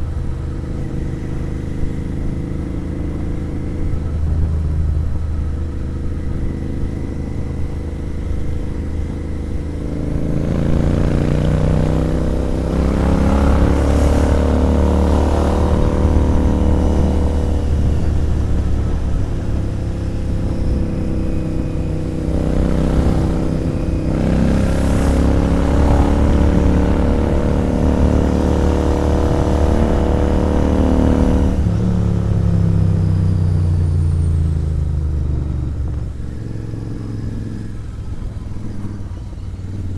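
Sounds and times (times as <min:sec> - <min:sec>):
motorcycle engine under throttle: 0:00.0 - 0:39.9.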